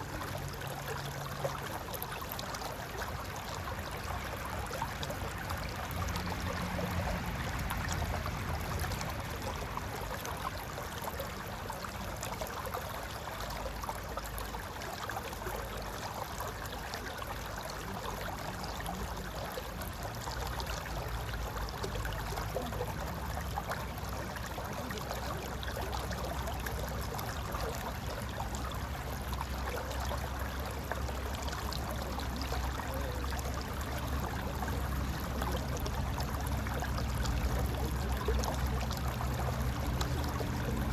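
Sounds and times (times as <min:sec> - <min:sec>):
river flowing over rocks: 0:00.0 - 0:40.9.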